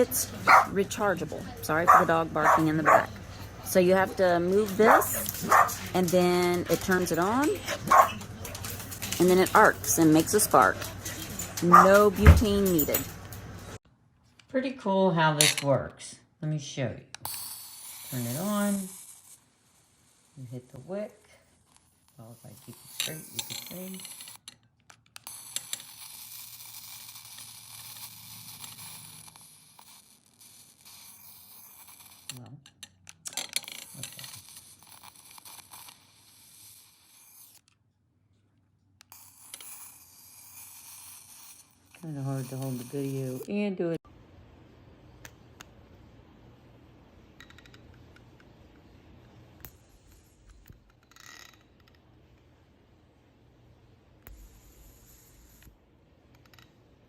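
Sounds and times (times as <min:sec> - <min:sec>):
electric arc hissing buzz: 0:17.3 - 0:21.2, 0:39.1 - 0:44.0.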